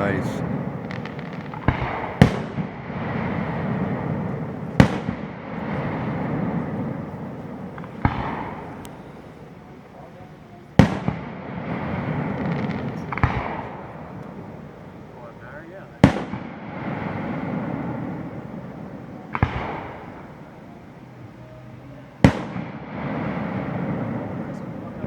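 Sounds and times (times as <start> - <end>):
fireworks bangs with rolling echo: 0.0 - 8.8, 10.8 - 14.6, 16.0 - 20.5, 22.2 - 24.8.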